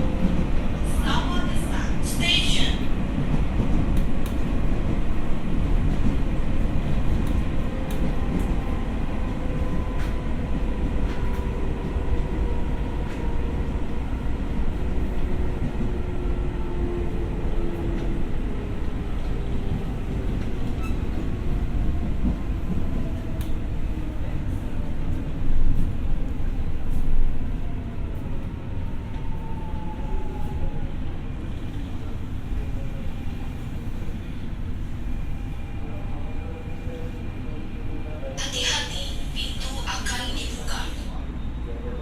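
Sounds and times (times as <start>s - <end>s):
train wheels rumbling on rail: 0.0s - 42.0s
light track clicks: 2.6s - 5.0s, 5.8s - 11.6s, 19.2s - 23.8s.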